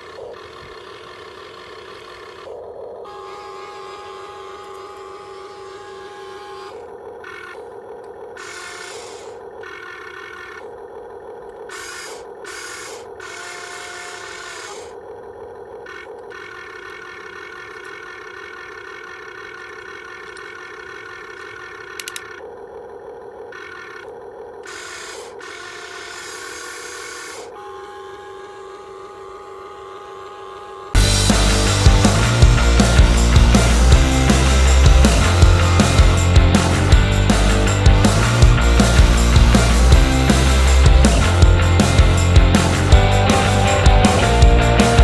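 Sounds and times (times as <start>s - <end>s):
small electric motors whining: 0.0s - 45.0s.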